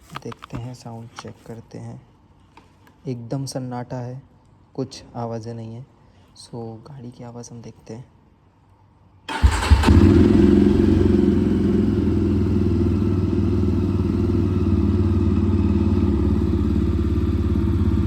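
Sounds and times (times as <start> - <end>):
motorcycle engine starting and idling: 9.3 - 18.0.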